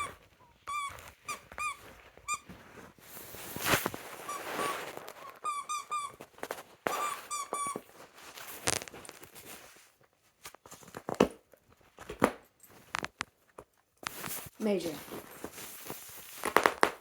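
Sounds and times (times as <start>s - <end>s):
dog squeaky toy squeaking: 0.0s - 2.5s, 4.2s - 8.0s.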